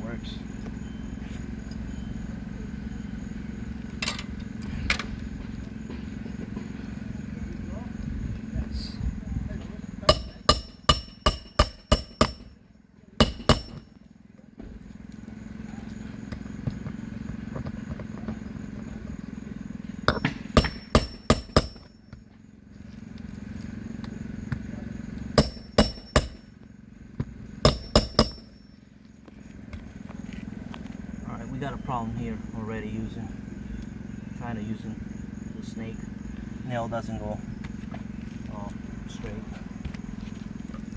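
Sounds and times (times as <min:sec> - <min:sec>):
hammer driving nails: 0:10.1 - 0:12.5, 0:13.2 - 0:13.9, 0:20.1 - 0:21.9, 0:25.4 - 0:26.5, 0:27.7 - 0:28.6.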